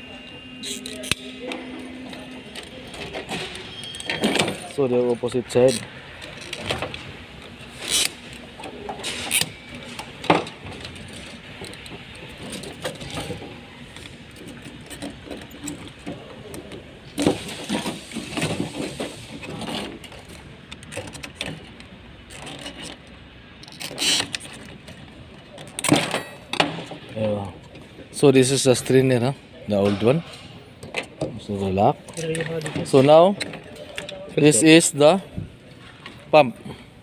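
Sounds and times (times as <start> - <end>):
parts rubbing and scraping: 0.6 - 27.1.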